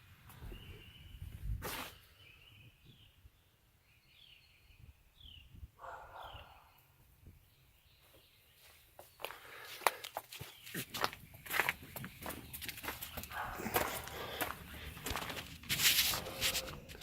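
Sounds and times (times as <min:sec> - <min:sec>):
brief rustle: 0:15.3 - 0:17.0.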